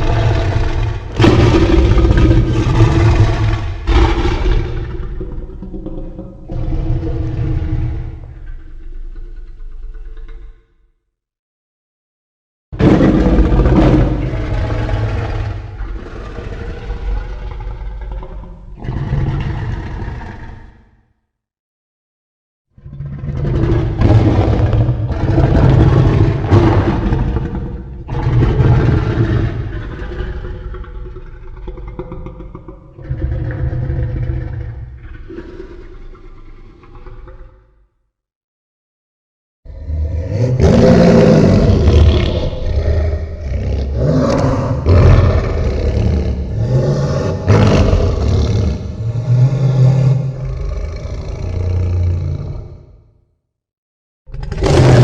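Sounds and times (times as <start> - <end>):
rumbling monster sound effect: 0.0 - 10.6, 12.8 - 20.8, 22.8 - 37.8, 39.7 - 53.2.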